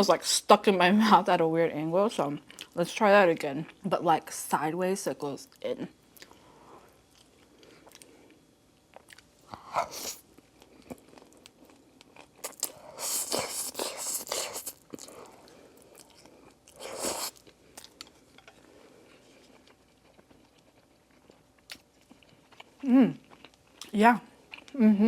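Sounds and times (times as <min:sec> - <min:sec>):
chewing with wet mouth clicks: 0:08.9 - 0:09.3, 0:10.6 - 0:18.6, 0:19.4 - 0:24.8.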